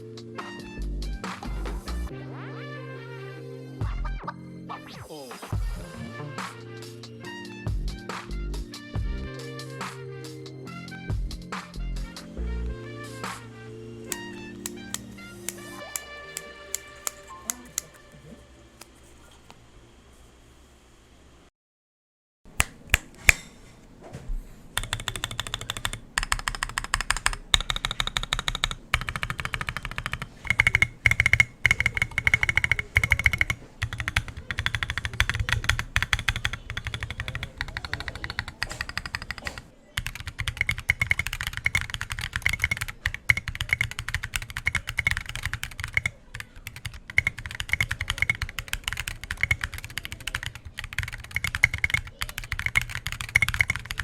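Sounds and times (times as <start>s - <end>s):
typing on mechanical keyboard: 14.1s - 18.0s, 24.8s - 54.0s.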